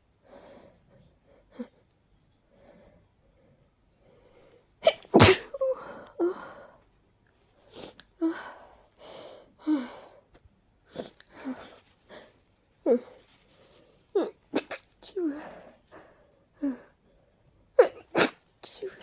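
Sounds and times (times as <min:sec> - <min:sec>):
person sneezing: 0:04.8 - 0:05.8, 0:14.6 - 0:14.9, 0:17.8 - 0:19.0.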